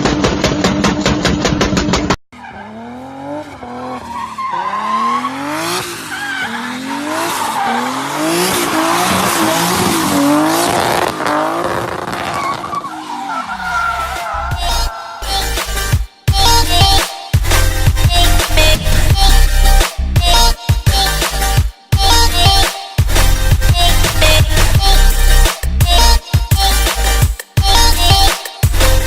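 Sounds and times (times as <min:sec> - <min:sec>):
car engine revving: 0:00.0 - 0:16.0
car engine pulsing: 0:00.0 - 0:28.0
tyres squealing: 0:03.6 - 0:15.4.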